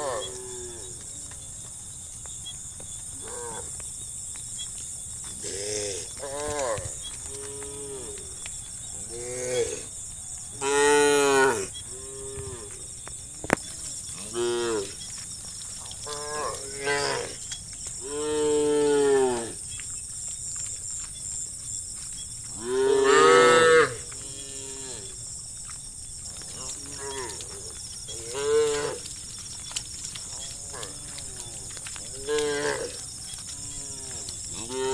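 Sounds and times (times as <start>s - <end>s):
cattle mooing: 22.6s - 25.2s, 30.4s - 34.9s.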